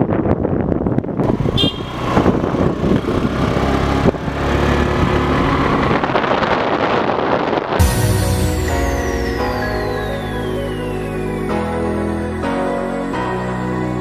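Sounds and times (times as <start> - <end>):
road and wind noise: 0.0 - 14.0
vehicle engine hum: 0.5 - 7.8.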